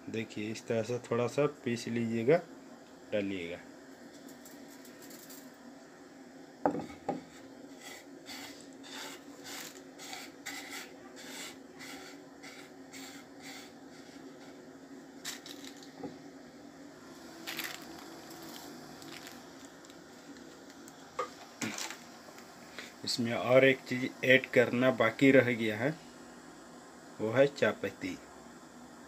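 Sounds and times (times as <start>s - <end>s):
steady low hum: 0.0s - 29.0s
seeds being crushed and scraped: 4.1s - 5.5s, 7.0s - 14.6s, 15.2s - 16.0s, 17.2s - 22.9s.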